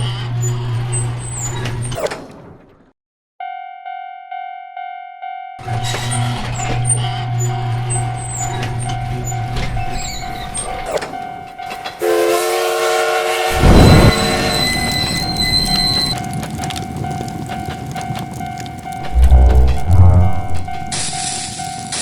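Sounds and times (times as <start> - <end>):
train horn: 12.0 - 14.8
train rumbling past: 12.1 - 22.0
rail clicks: 14.1 - 22.0
loud burst of noise: 19.0 - 21.2.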